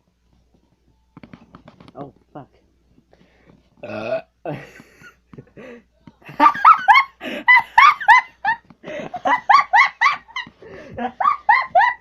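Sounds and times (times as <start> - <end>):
high-pitched squealing laughter: 9.2 - 12.0.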